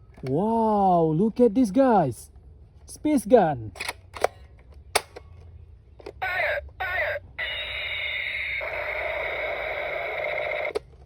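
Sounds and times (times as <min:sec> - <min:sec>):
toy gun warbling zaps: 0:07.0 - 0:10.8.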